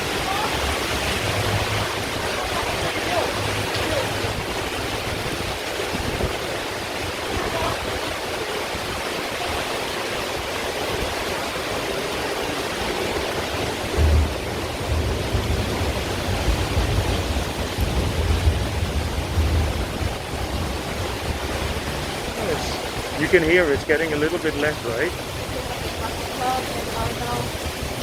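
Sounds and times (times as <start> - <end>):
low uneven rumble: 0.0 - 8.0, 13.6 - 28.0
heavy rain pouring: 0.0 - 28.0.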